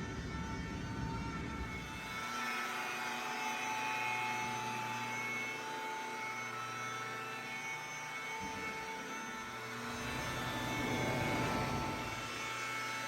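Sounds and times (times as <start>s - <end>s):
shop machine motor whir: 3.3s - 13.0s.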